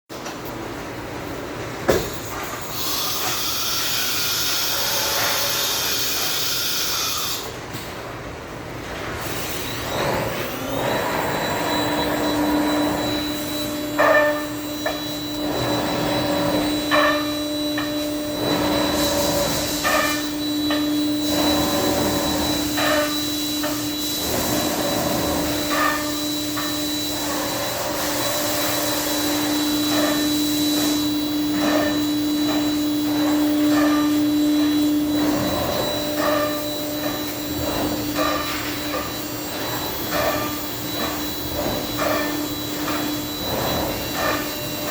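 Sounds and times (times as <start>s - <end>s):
router spindle whine: 9.5s - 44.9s.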